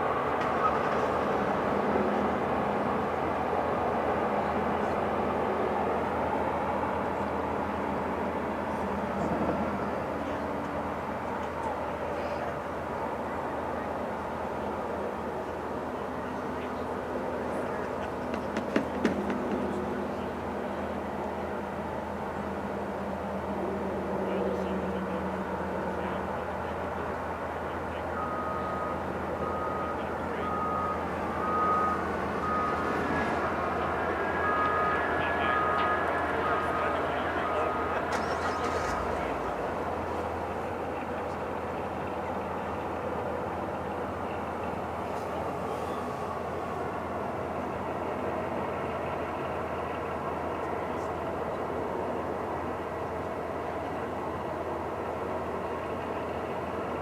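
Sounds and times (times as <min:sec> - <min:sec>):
low rumble of machinery: 0:00.0 - 0:57.0
backup alarm beeping: 0:28.2 - 0:38.9.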